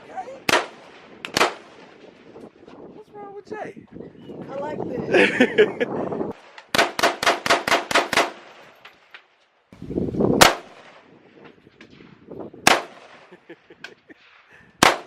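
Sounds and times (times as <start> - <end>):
gunshots: 0.4 - 2.2, 6.4 - 8.7, 10.4 - 11.1, 11.8 - 13.4, 14.2 - 15.0.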